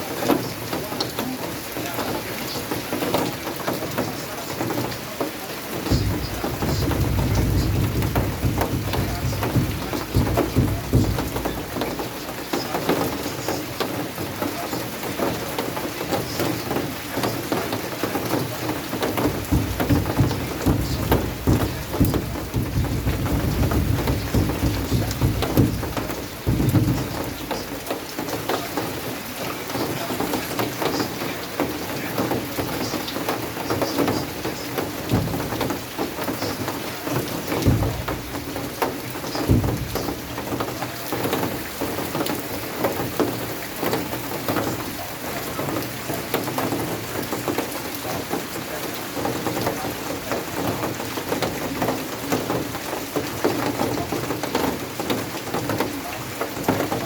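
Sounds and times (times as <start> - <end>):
heavy rain on hard surface: 0.0 - 57.0
short low thuds: 5.8 - 12.1, 19.2 - 28.0.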